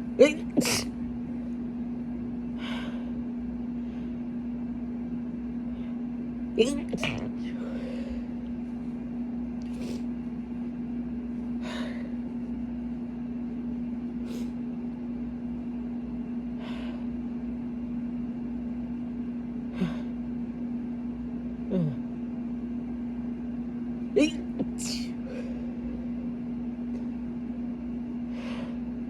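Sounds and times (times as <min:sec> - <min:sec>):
air-conditioning unit humming: 0:00.0 - 0:29.0
muffled voiced sound: 0:06.6 - 0:07.6.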